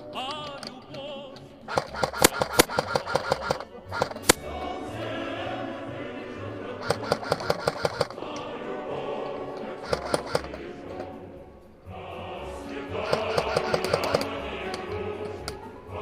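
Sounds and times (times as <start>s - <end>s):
music with singing: 0.0s - 16.0s
airsoft guns firing: 1.7s - 4.4s.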